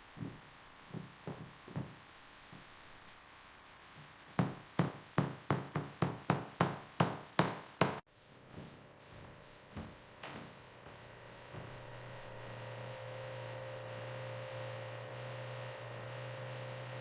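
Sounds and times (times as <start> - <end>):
sharp knocks on hard surface: 4.4 - 8.0.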